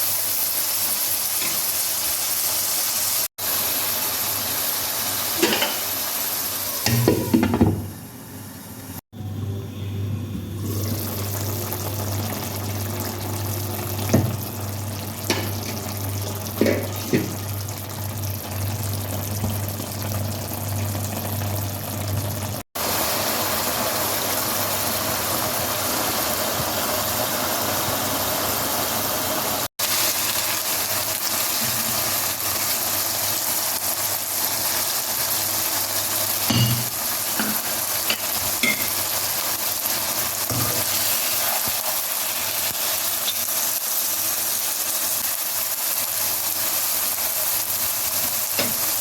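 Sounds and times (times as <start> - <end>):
food sizzling in a pan: 0.0 - 7.6, 10.6 - 49.0
utensil knocking on pan: 6.9 - 7.9, 36.5 - 39.0.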